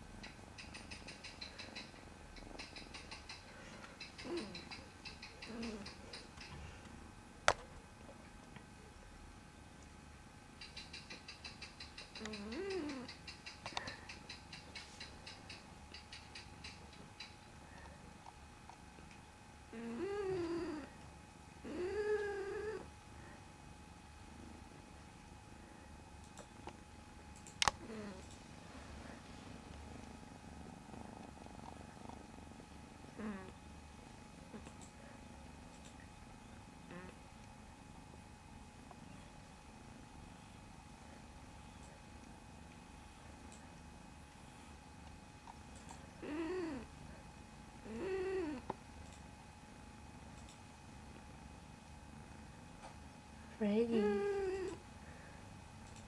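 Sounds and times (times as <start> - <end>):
cat purring: 0.3 - 6.9, 10.7 - 18.2, 19.7 - 21.0, 21.6 - 23.4, 27.6 - 48.8, 53.6 - 55.4.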